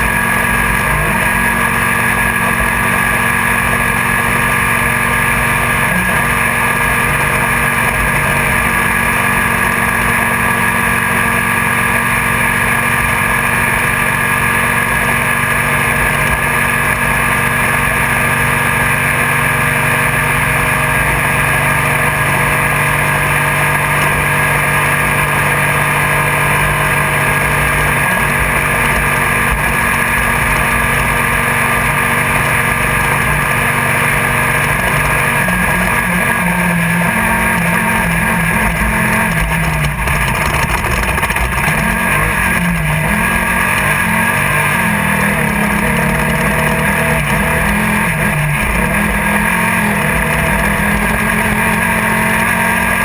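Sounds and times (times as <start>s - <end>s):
race vehicle engine running hard: 0.0s - 53.0s.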